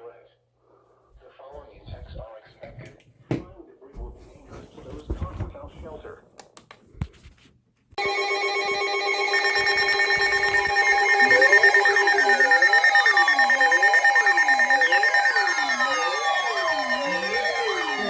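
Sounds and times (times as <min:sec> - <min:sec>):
electronic emergency alert tones: 0:08.0 - 0:18.0
siren wailing: 0:08.0 - 0:18.0.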